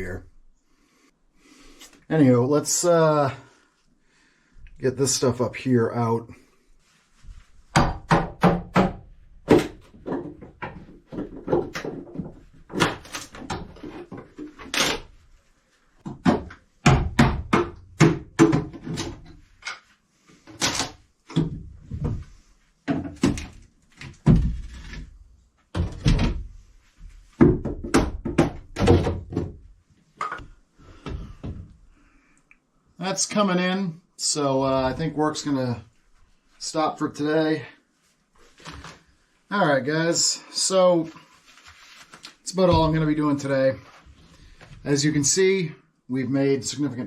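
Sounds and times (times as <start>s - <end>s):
wood thumping and clattering: 7.8s - 14.7s, 16.0s - 19.4s, 20.5s - 25.1s, 25.7s - 26.5s, 27.1s - 31.8s.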